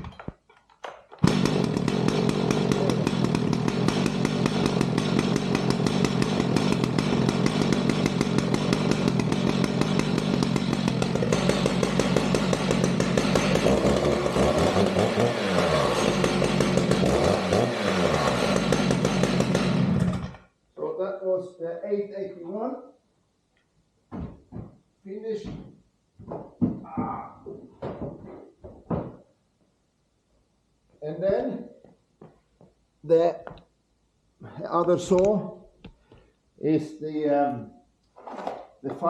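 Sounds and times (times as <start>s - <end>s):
chainsaw running: 1.2s - 20.5s.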